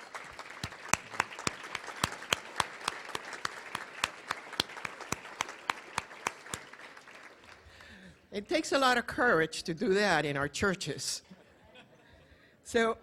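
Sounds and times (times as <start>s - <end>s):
audience applauding: 0.0s - 8.2s.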